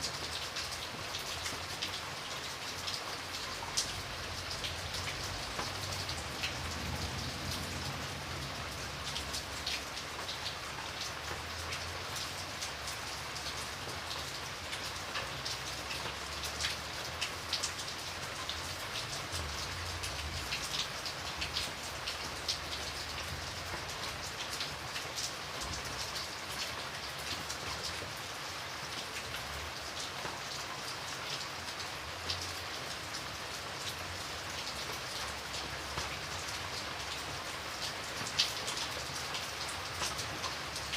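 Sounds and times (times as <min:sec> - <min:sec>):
steady rain with drop impacts: 0:00.0 - 0:40.9.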